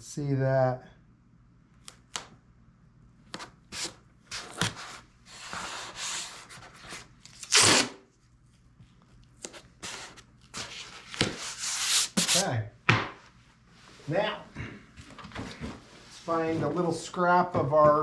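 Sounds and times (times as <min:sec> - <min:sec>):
masking tape pulled and rubbed: 0:03.7 - 0:08.0, 0:09.4 - 0:12.5.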